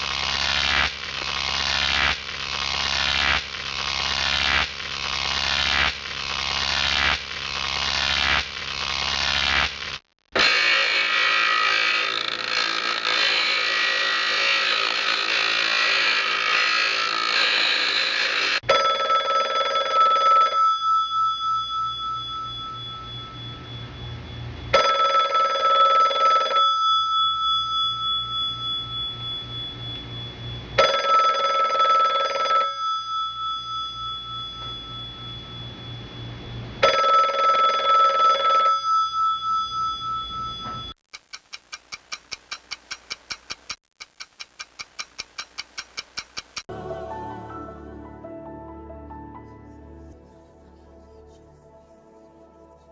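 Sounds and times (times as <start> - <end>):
old telephone bell ringing: 18.7 - 30.1, 30.8 - 36.2, 36.8 - 40.9.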